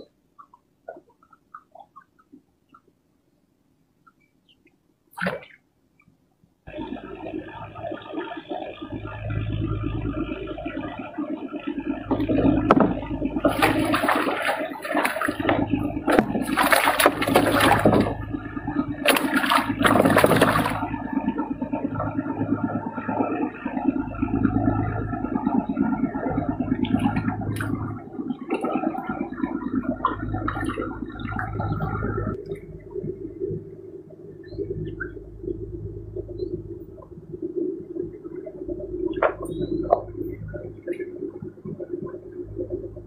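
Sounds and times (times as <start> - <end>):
steady low hum: 0.0 - 43.0
water splashing and rushing: 11.4 - 33.6.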